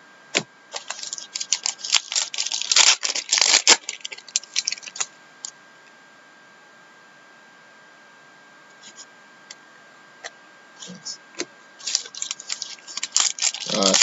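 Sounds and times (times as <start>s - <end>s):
card packs crinkling and rustling: 0.7s - 5.1s, 11.8s - 14.0s.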